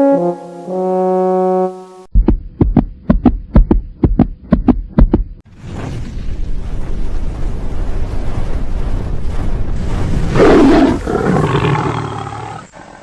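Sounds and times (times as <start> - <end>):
rumbling roar sound effect: 9.8 - 13.0.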